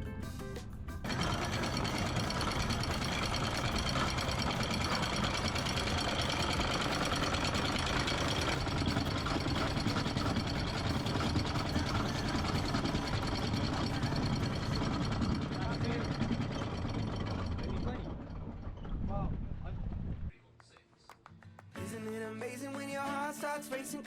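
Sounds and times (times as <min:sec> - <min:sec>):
boat engine running: 0:01.0 - 0:20.3.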